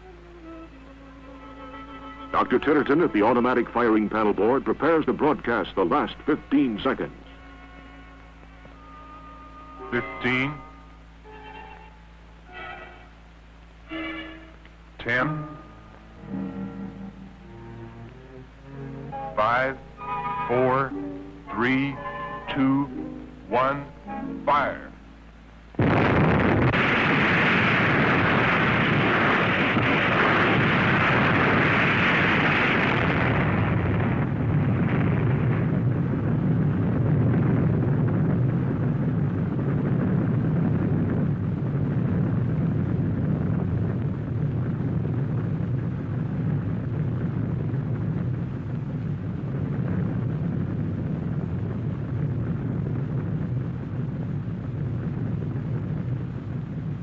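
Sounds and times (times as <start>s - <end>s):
hissing rumble: 0.0s - 57.0s
long low rumble: 0.0s - 57.0s
explosion blast: 25.8s - 57.0s.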